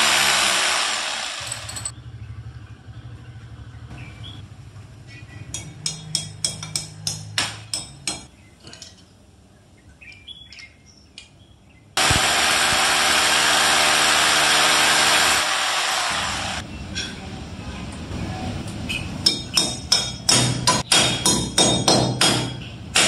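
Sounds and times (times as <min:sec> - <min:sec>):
loud steady motor noise: 0:00.0 - 0:01.9, 0:12.0 - 0:16.6.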